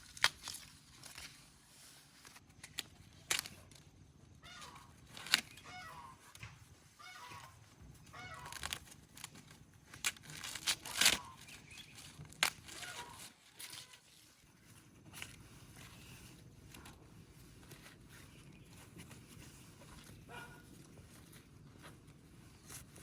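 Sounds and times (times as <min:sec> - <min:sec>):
low steady background: 0:00.0 - 0:23.0
sharp clicks and rustles: 0:00.0 - 0:23.0
poultry calling: 0:04.4 - 0:08.8, 0:11.1 - 0:11.5, 0:12.7 - 0:13.3.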